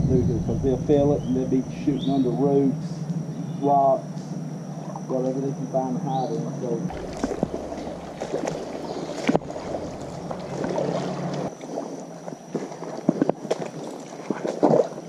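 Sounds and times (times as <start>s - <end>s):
sharp splashes and knocks: 6.9s - 11.8s
water sloshing around legs: 6.9s - 15.0s.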